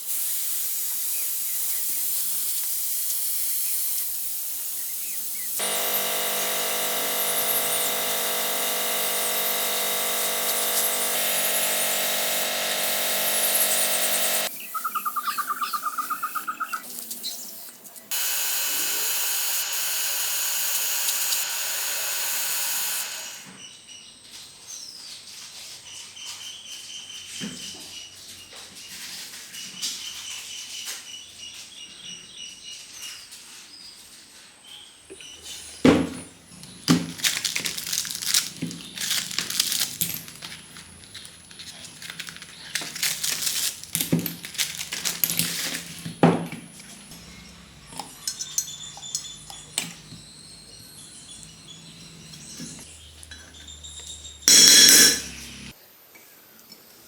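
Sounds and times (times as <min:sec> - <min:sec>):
loud hiss: 0:00.0 - 0:14.5, 0:18.1 - 0:23.5
hard objects clinking and knocking: 0:36.9 - 0:46.6, 0:54.5 - 0:55.4.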